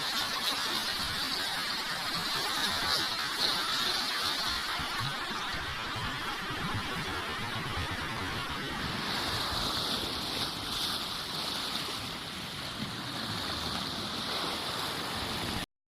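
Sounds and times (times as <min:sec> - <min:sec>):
sea surf washing on shore: 0:00.0 - 0:15.6
wind buffeting microphone: 0:04.4 - 0:15.6.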